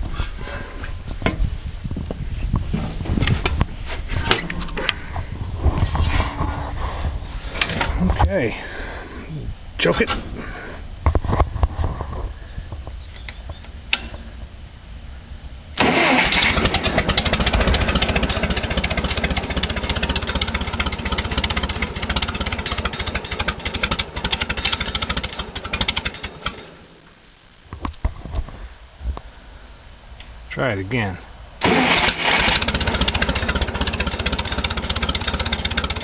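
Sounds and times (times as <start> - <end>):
tractor engine cranking: 15.8 - 27.1, 31.6 - 36.0.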